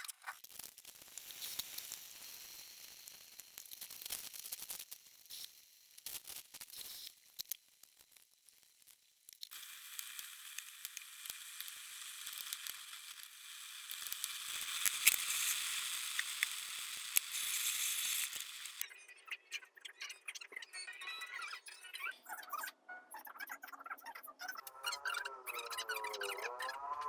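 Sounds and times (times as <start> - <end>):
food sizzling in hot oil: 0.8 - 7.3, 9.4 - 18.8.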